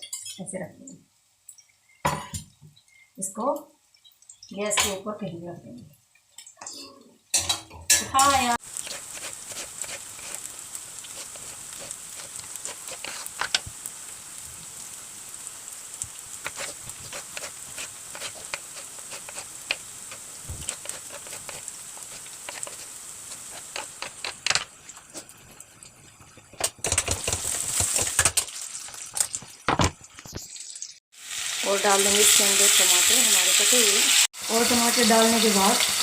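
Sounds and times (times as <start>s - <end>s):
onions sizzling in oil: 7.3s - 36.0s.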